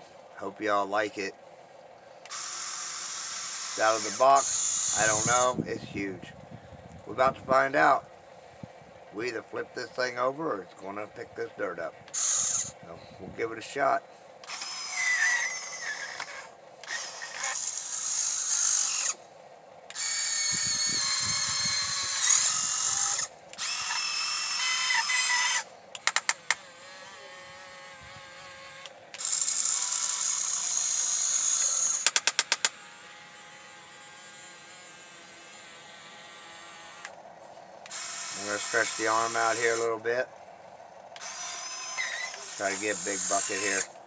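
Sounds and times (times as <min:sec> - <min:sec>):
electric motors whining: 0:02.1 - 0:06.2, 0:12.1 - 0:12.8, 0:14.3 - 0:44.0.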